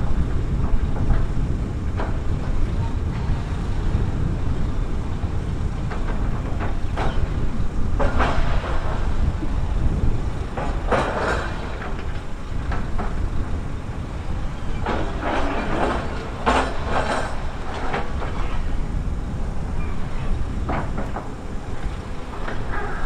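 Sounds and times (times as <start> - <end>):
bulldozer diesel engine: 0.0 - 23.0
steel tracks clanking: 0.0 - 23.0
clattering and scraping: 14.7 - 18.7.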